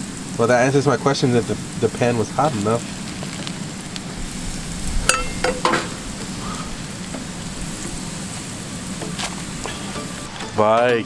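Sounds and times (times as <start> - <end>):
fish sizzling in deep fryer: 0.0 - 11.0.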